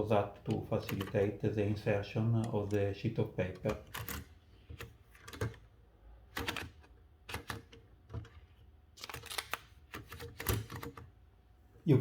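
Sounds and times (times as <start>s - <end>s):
typewriter parts clicking: 3.6s - 5.6s, 9.0s - 11.1s.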